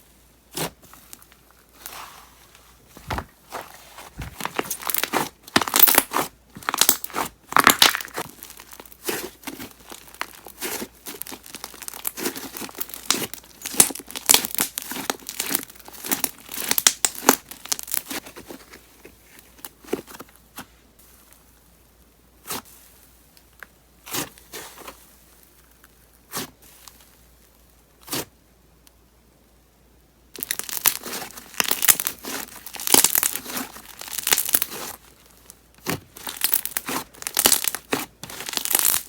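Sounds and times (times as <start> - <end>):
slime bubbles crackling and popping: 3.5 - 18.2, 30.3 - 35.1, 35.8 - 39.0.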